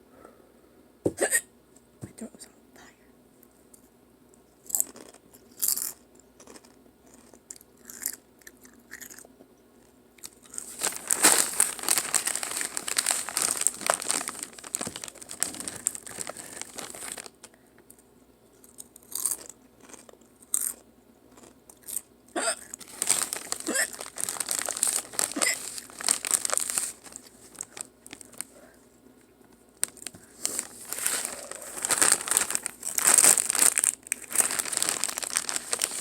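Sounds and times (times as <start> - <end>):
chips being bitten and chewed: 4.6 - 17.2, 18.6 - 22.1, 29.9 - 36.0.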